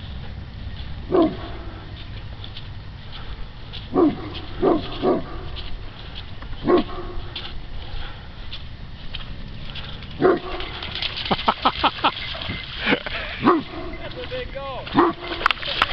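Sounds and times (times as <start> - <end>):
dog barking: 1.1 - 1.6, 3.9 - 5.6, 6.6 - 7.3, 10.2 - 10.7, 13.4 - 14.0, 14.9 - 15.4.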